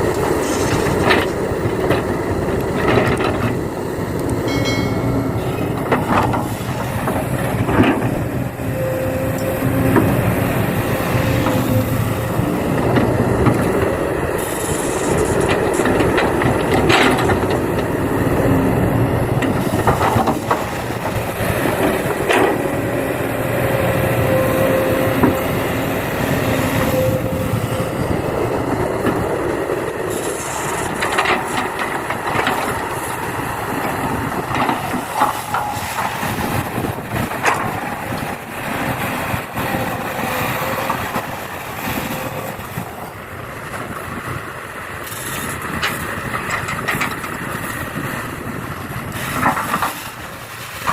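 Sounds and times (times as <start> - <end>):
excavator running: 0.0 - 50.9
clatter and knocks: 15.3 - 17.9.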